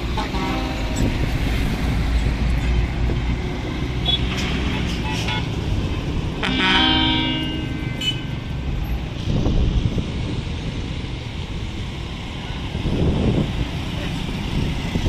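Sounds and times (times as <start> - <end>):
bus horn blowing: 0.0 - 1.2, 4.0 - 5.5, 6.4 - 8.5
low rumble of bus engines: 0.0 - 15.0.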